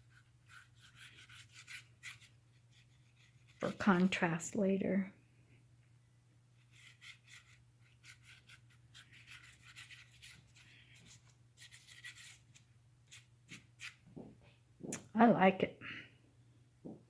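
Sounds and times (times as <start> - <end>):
faint scratchy paint strokes: 0.0 - 5.6, 6.5 - 14.3.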